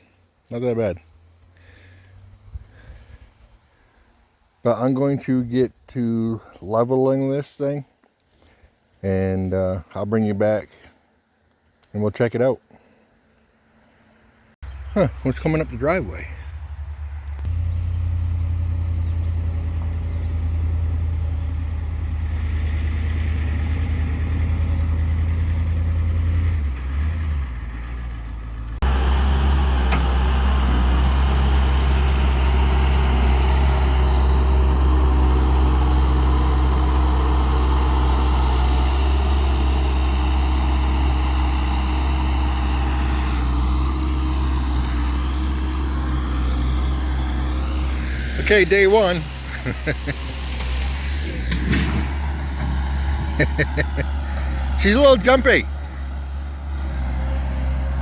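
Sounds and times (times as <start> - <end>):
heavy vehicle engine humming: 14.0 - 58.0.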